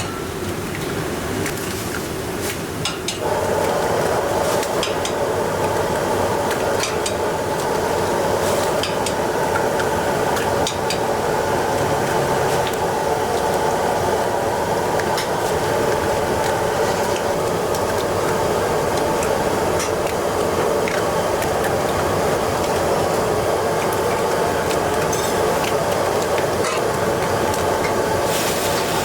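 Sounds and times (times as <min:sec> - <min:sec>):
steady rushing roar: 0:03.2 - 0:29.0
utensils clicking against pans: 0:04.5 - 0:05.2, 0:06.5 - 0:07.8, 0:08.6 - 0:11.1, 0:18.9 - 0:20.2, 0:23.8 - 0:28.0.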